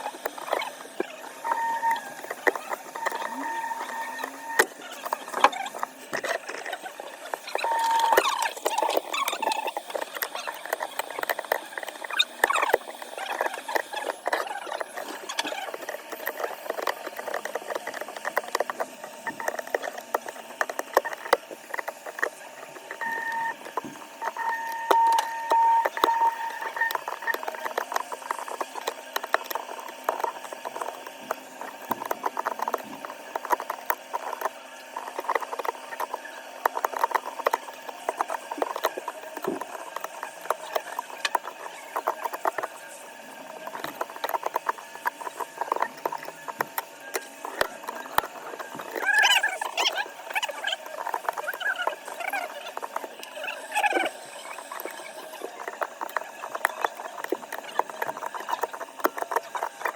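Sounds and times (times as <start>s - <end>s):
small tools clicking and scraping: 0.0s - 59.9s.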